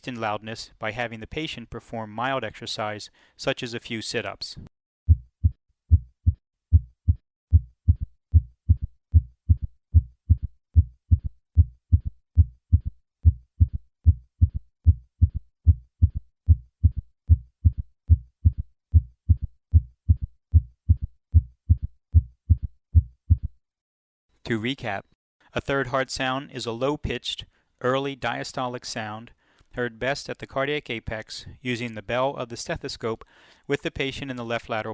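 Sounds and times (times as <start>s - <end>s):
galloping heart thuds: 5.1s - 23.6s.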